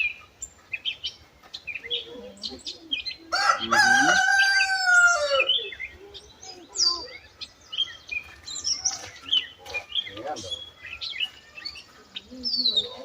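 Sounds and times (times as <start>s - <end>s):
small birds chirping: 0.0s - 13.0s
rooster crowing: 3.3s - 5.6s.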